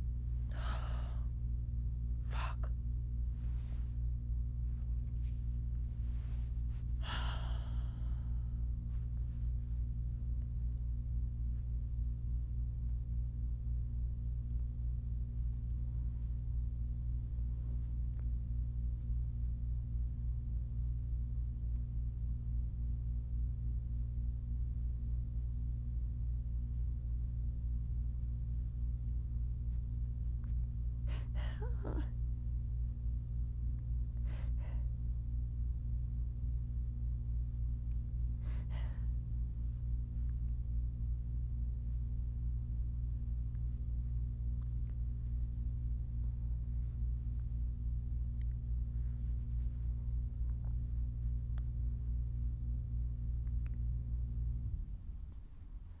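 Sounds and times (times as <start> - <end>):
low electrical hum: 0.0 - 56.0
person breathy sighs: 0.5 - 1.3, 7.0 - 8.6, 31.1 - 32.1.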